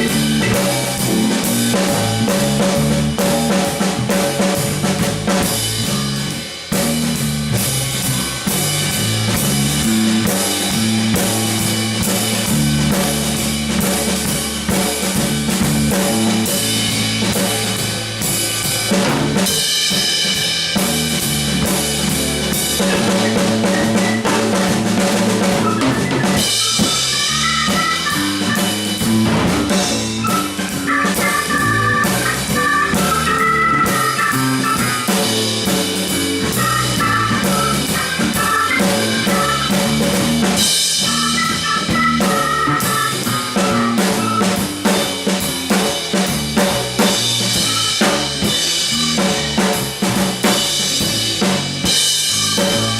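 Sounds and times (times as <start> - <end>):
bass guitar line: 0.0 - 52.9
instrumental band jamming: 0.0 - 52.9
held melody notes: 21.2 - 45.2.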